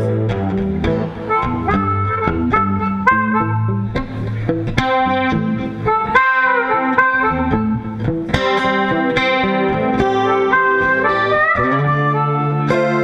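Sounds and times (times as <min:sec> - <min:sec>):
blues guitar with bent notes: 0:00.0 - 0:13.0
low bass line: 0:00.0 - 0:13.0.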